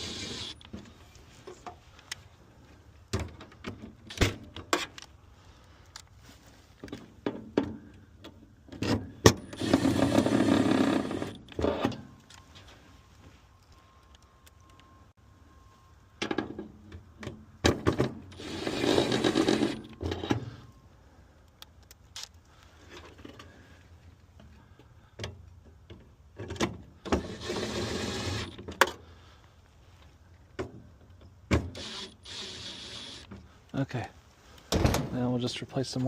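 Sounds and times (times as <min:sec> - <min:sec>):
cordless drill driving screws: 0:00.0 - 0:00.6, 0:09.5 - 0:11.4, 0:18.3 - 0:20.0, 0:27.1 - 0:28.6, 0:31.7 - 0:33.3.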